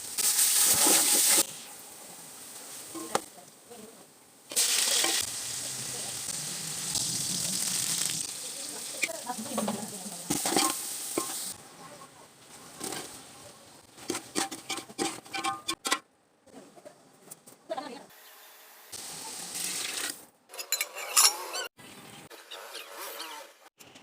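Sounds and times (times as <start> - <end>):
food sizzling in hot oil: 0.0 - 3.3, 4.5 - 11.6, 18.3 - 20.2
stirring: 14.0 - 15.9.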